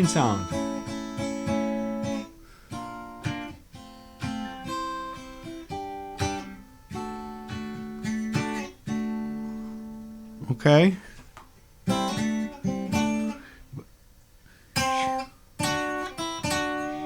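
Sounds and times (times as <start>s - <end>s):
clean electric guitar: 0.0s - 10.5s.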